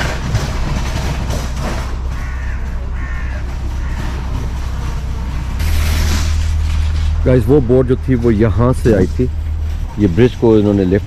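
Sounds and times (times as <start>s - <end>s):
low engine-like hum: 0.0s - 11.0s
low outdoor rumble: 0.0s - 11.0s
crow cawing: 2.1s - 4.8s.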